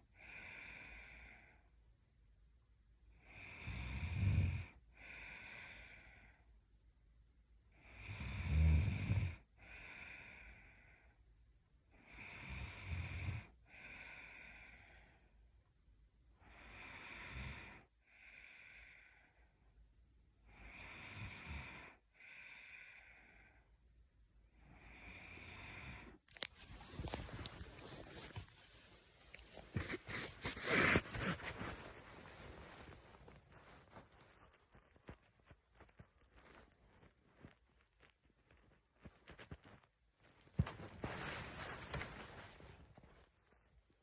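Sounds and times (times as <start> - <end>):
woman snoring: 3.2 - 5.9, 7.9 - 10.4, 12.1 - 14.4, 16.5 - 18.8, 20.6 - 23.0, 24.8 - 26.2.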